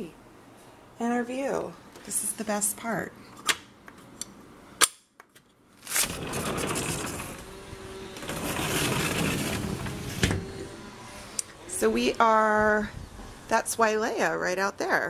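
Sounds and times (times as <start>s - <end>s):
wind on microphone: 11.7s - 13.6s.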